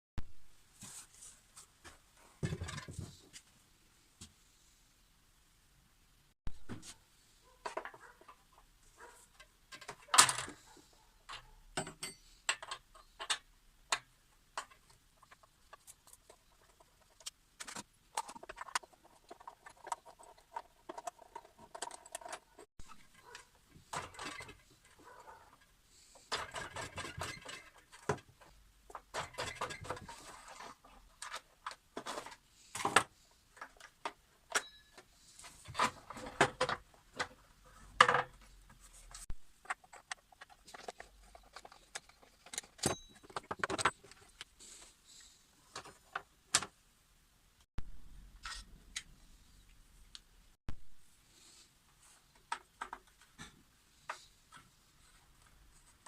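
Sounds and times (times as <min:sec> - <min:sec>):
hand tools clicking and knocking: 0:09.3 - 0:30.4, 0:39.5 - 0:44.5.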